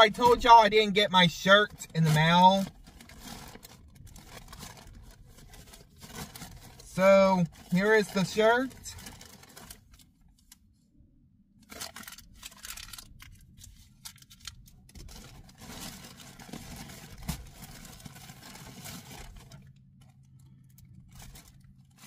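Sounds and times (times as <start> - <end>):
package rustling and tearing: 1.7 - 10.1, 11.6 - 22.0.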